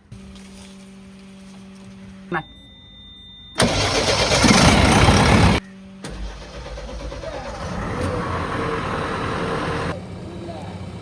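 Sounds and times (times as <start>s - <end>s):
diesel engine running: 3.6s - 11.0s.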